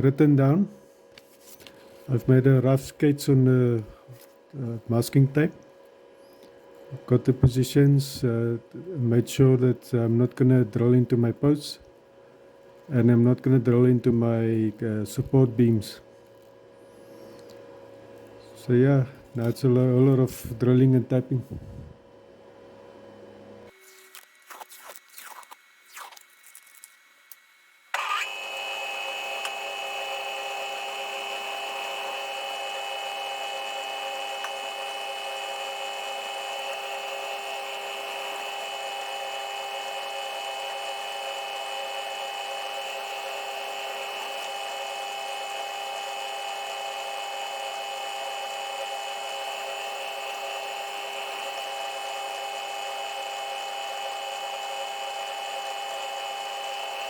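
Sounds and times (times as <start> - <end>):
milling machine motor whine: 26.4 - 57.0.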